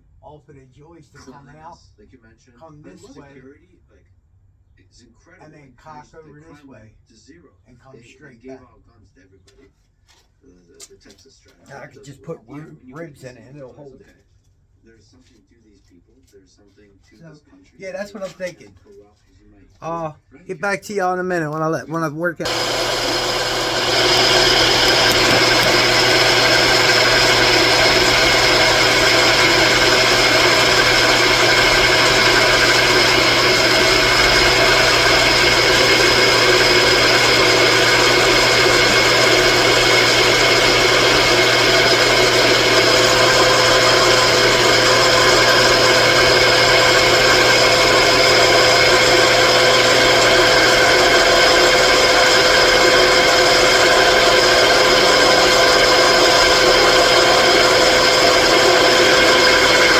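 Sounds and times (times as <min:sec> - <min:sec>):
power tool motor whining: 0:22.4 - 0:59.9.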